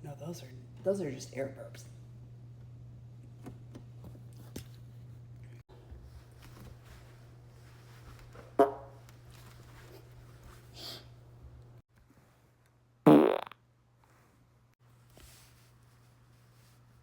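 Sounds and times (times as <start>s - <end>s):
farts: 13.1s - 13.6s.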